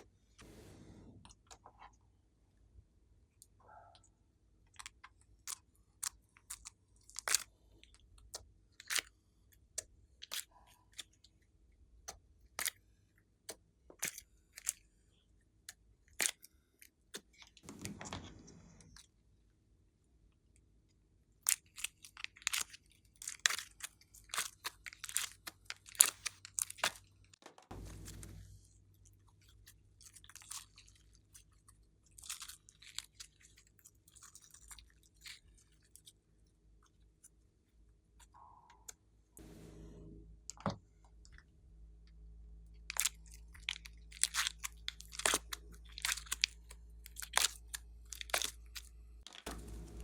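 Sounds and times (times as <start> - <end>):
slime squelching rustle: 42.9 - 50.0.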